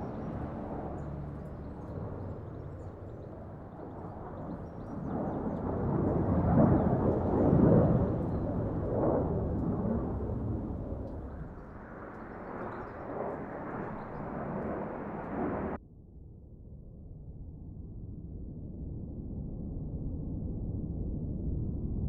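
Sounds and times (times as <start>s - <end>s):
fighter jet passing overhead: 0.0s - 15.8s.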